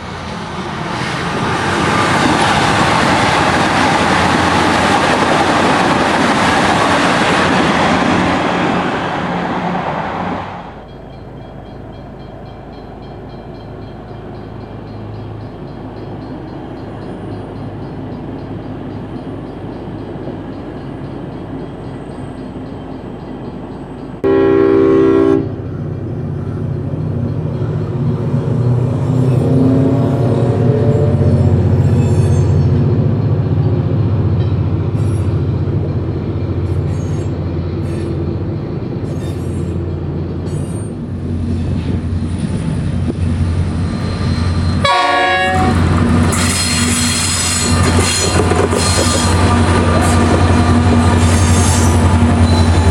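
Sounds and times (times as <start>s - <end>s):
diesel railcar running: 0.0s - 52.9s
electric train passing at speed: 0.0s - 52.9s
locomotive engine: 0.0s - 52.9s
train horn blast: 24.2s - 25.6s, 44.7s - 52.8s.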